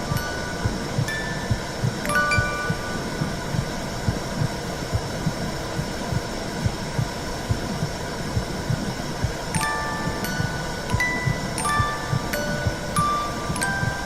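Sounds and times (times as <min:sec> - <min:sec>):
soft chime notes: 0:00.0 - 0:03.4, 0:09.6 - 0:14.0.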